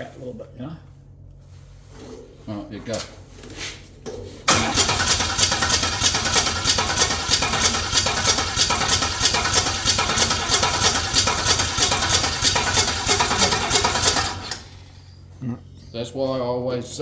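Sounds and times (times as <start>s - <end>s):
car engine fast idle: 4.5s - 15.2s.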